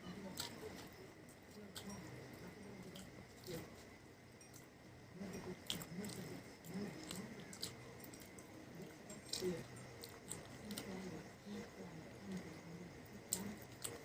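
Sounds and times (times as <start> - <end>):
person chewing food: 5.5 - 11.0, 12.3 - 14.0.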